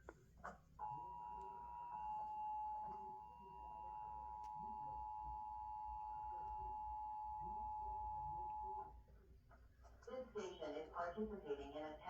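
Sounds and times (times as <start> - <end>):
two-tone alarm tone: 0.8 - 8.9.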